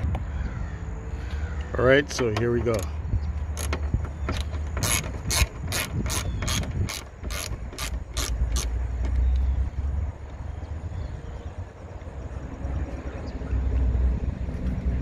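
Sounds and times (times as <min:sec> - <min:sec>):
ratchet wrench clicking: 0:04.4 - 0:08.8.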